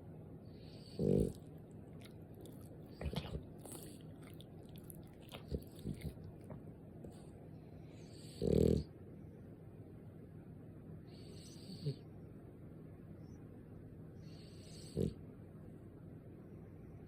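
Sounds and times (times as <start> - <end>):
dog snoring: 0.5 - 6.2, 7.9 - 8.9, 11.1 - 12.0, 14.2 - 15.2.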